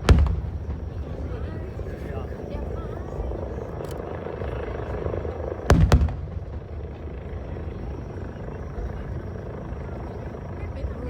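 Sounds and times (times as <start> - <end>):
firework shells bursting: 0.0 - 1.2
steady low rumble: 0.0 - 11.0.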